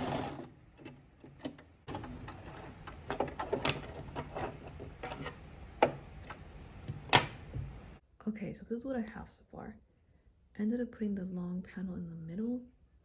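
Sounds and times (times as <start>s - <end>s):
sewing machine stitching: 0.0s - 5.3s
clicks and knocks of handling: 0.7s - 7.8s.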